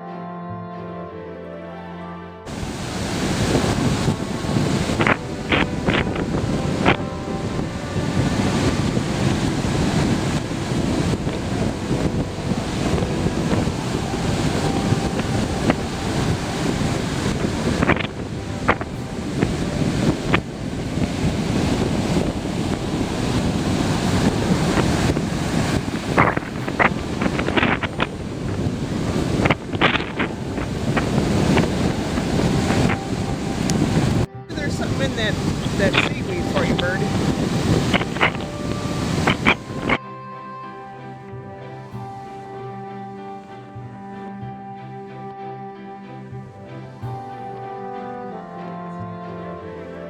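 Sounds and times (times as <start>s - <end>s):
ocean surf washing onto beach: 2.5s - 40.0s
wind buffeting microphone: 2.5s - 44.8s.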